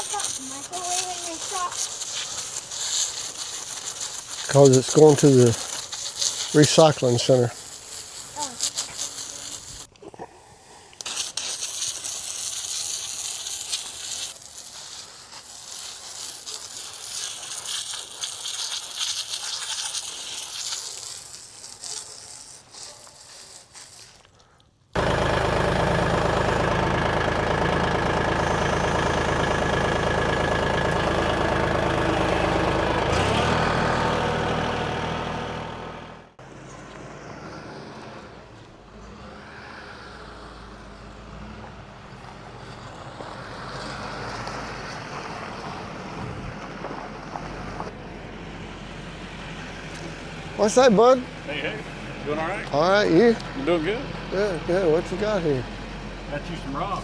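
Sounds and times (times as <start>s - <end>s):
loud engine running: 25.0s - 39.5s, 44.0s - 57.0s.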